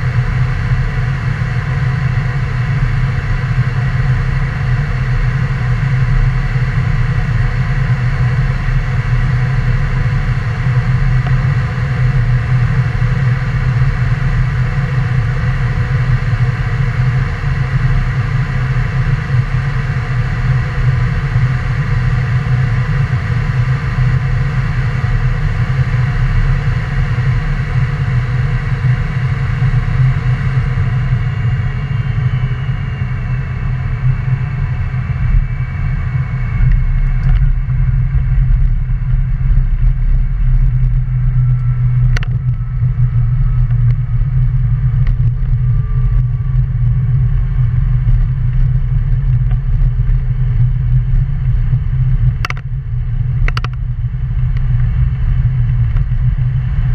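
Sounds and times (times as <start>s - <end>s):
jet engines whining: 28.3s - 50.5s.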